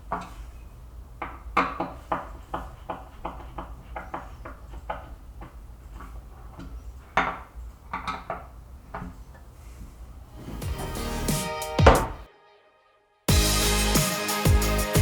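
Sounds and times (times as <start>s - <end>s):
wood and hardware knocking: 1.1s - 9.5s, 11.8s - 12.2s.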